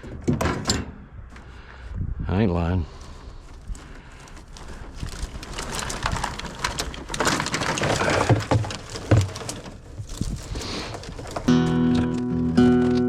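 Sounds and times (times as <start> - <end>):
dull thumps: 5.5 - 11.7
guitar music: 11.5 - 13.0.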